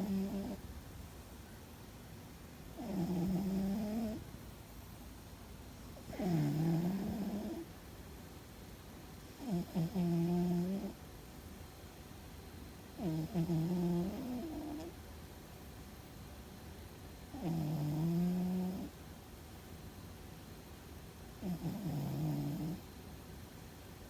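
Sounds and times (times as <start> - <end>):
cat snoring: 0.0 - 0.6, 2.8 - 4.2, 6.0 - 7.7, 9.4 - 11.0, 13.0 - 14.9, 17.3 - 18.9, 21.4 - 22.9.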